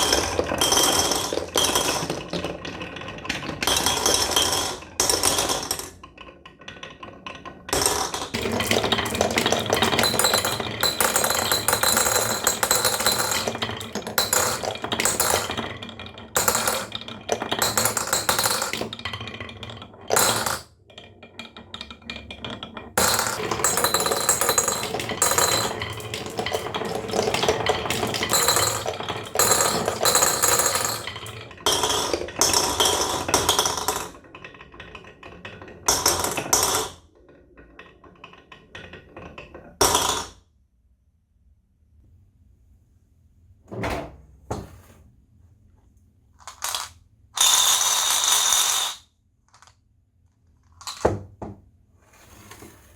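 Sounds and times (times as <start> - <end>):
small hard objects clattering: 0.0 - 19.2, 23.0 - 34.0.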